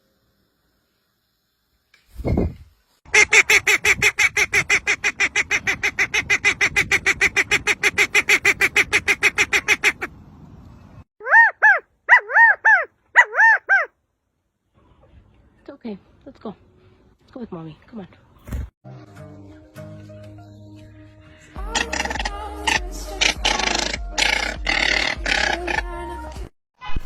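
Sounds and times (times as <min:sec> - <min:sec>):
bird calling harsh pulses: 0:11.2 - 0:14.0, 0:21.6 - 0:26.0.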